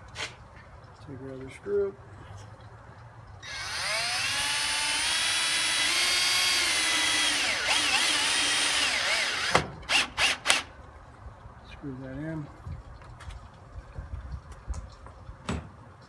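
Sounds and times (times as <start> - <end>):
cordless drill driving a screw: 3.4 - 10.7.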